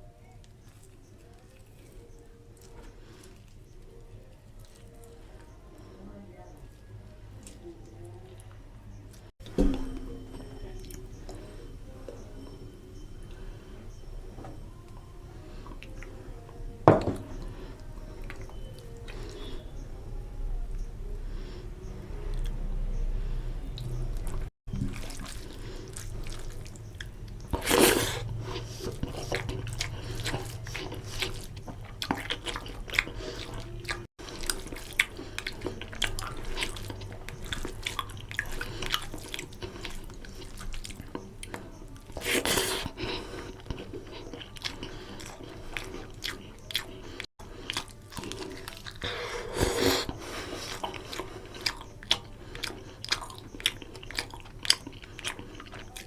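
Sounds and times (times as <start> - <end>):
person chewing and smacking: 23.8 - 56.0.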